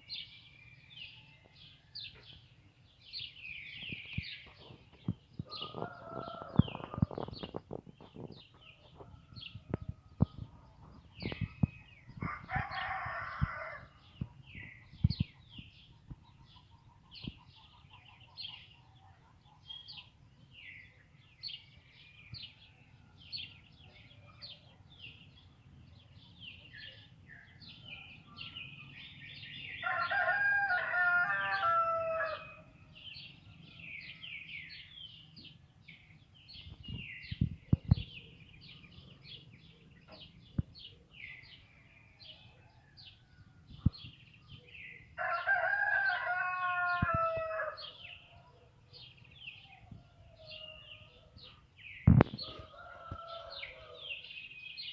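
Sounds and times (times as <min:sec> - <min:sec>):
small birds chirping: 0:00.0 - 0:22.8, 0:23.4 - 0:54.9
rooster crowing: 0:29.8 - 0:32.5, 0:45.2 - 0:47.8.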